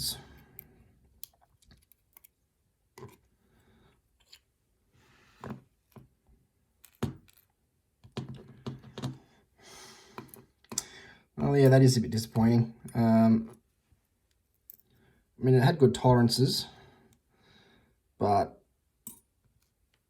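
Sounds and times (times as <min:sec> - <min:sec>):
small lock parts clicking: 0:00.6 - 0:02.4, 0:06.8 - 0:09.2.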